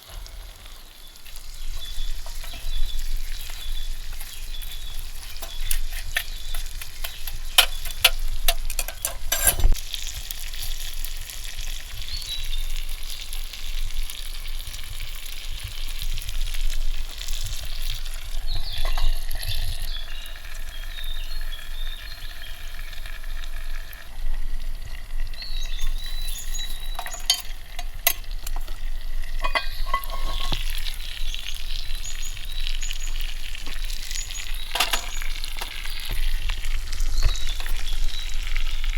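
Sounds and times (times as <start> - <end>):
small birds chirping: 0.0 - 9.8, 17.2 - 23.2, 25.3 - 38.9
campfire sizzling and crackling: 0.0 - 38.9
fire popping: 0.0 - 38.9.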